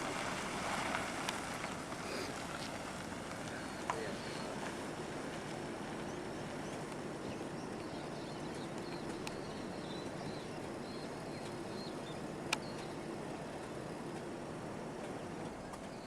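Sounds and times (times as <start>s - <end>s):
river rushing: 0.0s - 7.8s.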